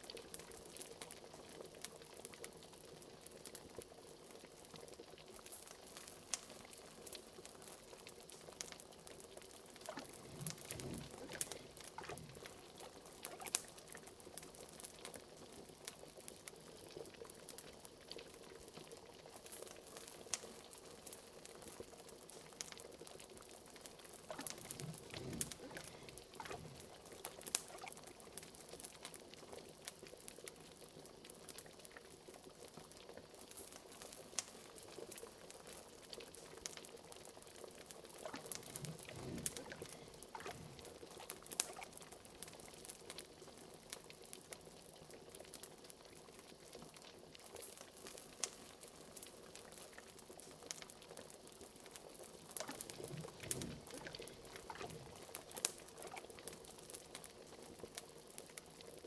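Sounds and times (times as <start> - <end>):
pot of liquid bubbling: 0.0 - 59.0
wood fire crackling: 0.0 - 59.0.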